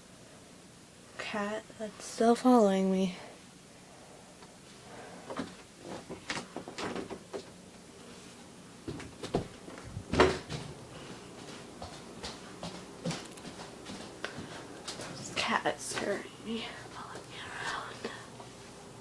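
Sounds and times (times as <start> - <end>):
light knocks and bumps: 8.9 - 10.8.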